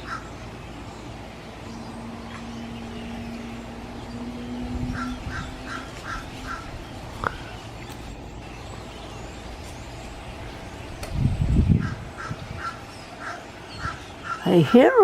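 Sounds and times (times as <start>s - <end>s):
low steady hum: 0.0s - 15.0s
crow cawing: 4.9s - 7.5s, 11.8s - 14.4s.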